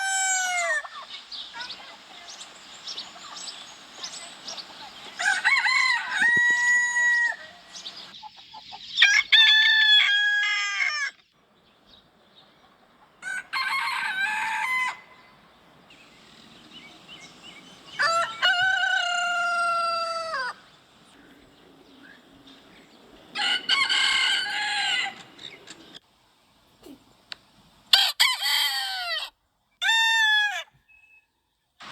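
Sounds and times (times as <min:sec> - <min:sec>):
rooster crowing: 0:00.0 - 0:01.7, 0:04.9 - 0:08.1, 0:09.0 - 0:11.2, 0:13.2 - 0:26.0, 0:27.9 - 0:30.8.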